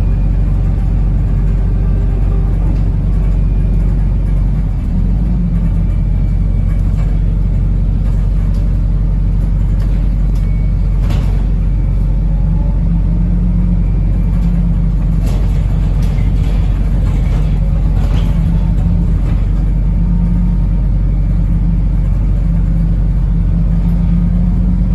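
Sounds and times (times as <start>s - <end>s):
bus engine low rumble: 0.0s - 24.9s
faint rattles: 14.2s - 20.2s.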